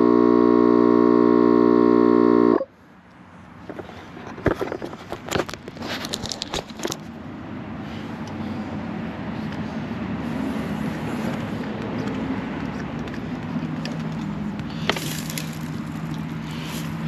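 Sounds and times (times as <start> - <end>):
motor hum with low drone: 0.0 - 2.7.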